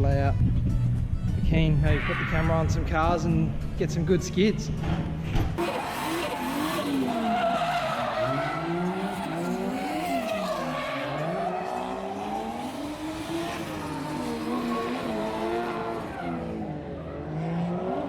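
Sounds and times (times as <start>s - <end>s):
car engines revving: 1.9s - 18.0s
tyres squealing: 5.6s - 16.6s.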